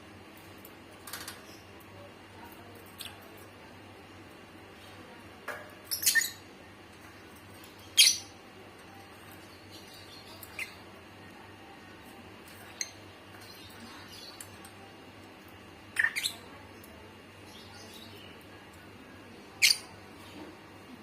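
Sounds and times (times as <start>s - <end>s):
bird chirping: 5.9s - 6.4s, 15.9s - 16.5s.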